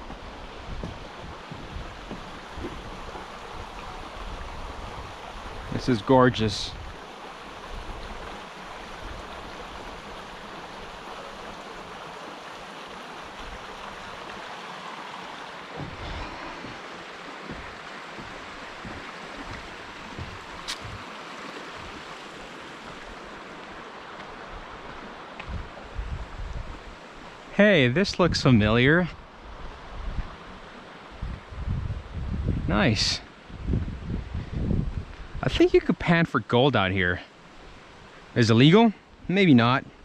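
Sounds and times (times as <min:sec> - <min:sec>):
stream water rushing: 0:00.0 - 0:40.0
low thumps: 0:15.7 - 0:21.0.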